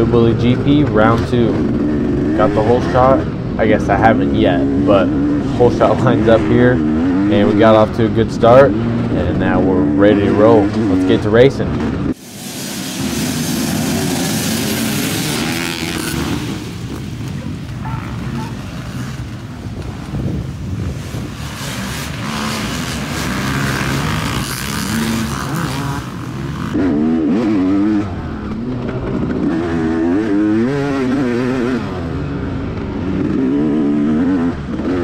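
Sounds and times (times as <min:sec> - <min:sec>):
dirt bike engine revving: 0:00.0 - 0:35.0.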